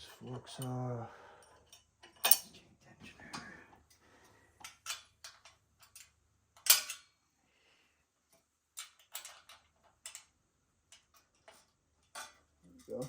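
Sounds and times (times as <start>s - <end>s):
metal parts clinking and clanking: 1.6s - 2.6s, 4.6s - 7.1s, 8.8s - 10.3s, 10.9s - 13.0s.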